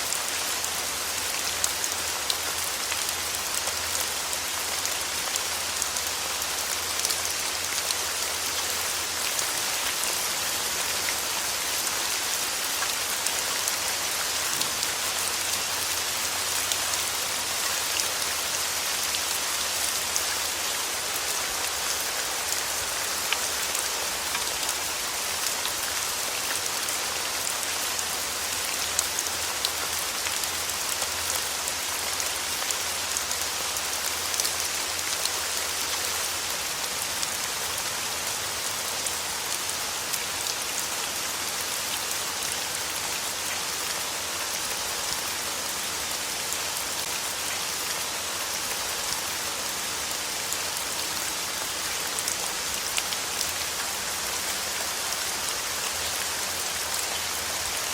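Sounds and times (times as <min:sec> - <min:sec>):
steady rain falling: 0:00.0 - 0:57.9.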